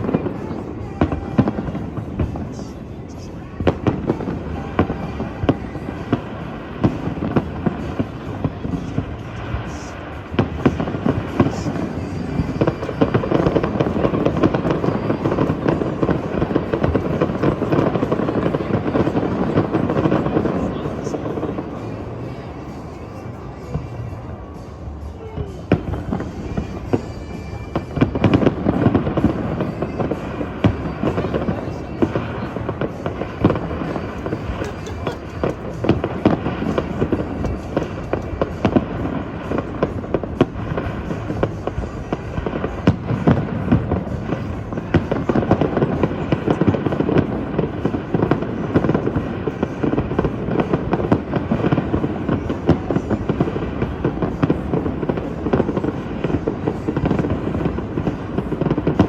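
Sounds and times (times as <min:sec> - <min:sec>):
fireworks bangs and crackles: 0:00.0 - 0:59.0.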